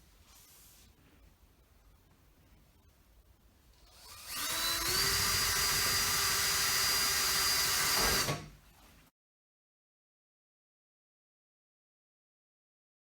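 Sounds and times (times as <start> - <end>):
power drill whining: 3.9 - 8.5.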